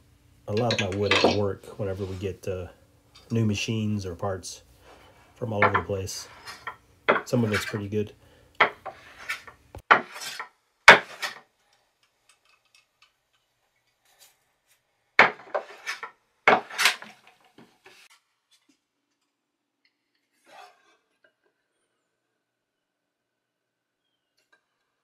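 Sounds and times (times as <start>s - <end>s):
hand plane shaving wood: 8.9s - 11.4s.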